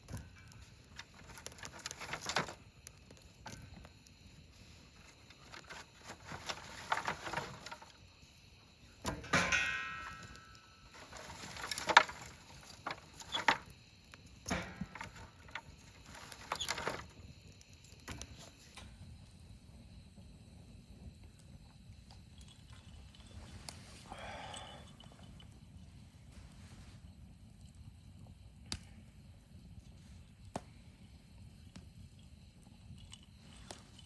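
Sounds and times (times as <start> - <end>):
wood fire crackling: 0.0 - 34.0
ringing metal clank: 9.1 - 11.4.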